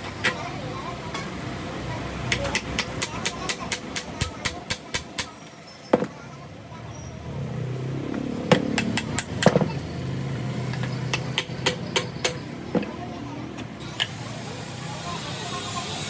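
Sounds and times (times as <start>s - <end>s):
sharp metallic taps: 2.3s - 5.4s, 8.1s - 9.8s, 10.7s - 13.0s.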